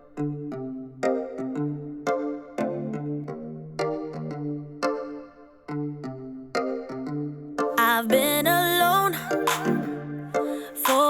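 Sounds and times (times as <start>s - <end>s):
electronic pop synthesizer music: 0.0s - 11.0s.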